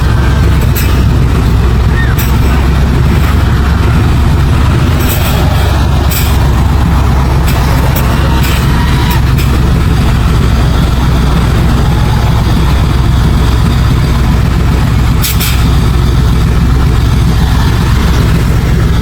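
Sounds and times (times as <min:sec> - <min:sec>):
diesel engine droning: 0:00.0 - 0:19.0.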